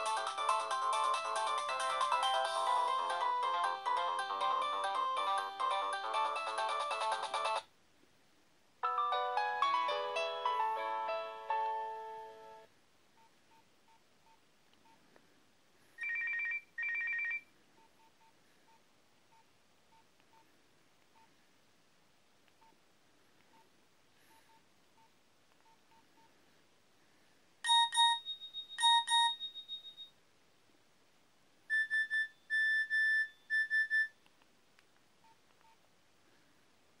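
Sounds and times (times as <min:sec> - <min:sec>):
mobile phone alert beeps: 0:27.7 - 0:30.1.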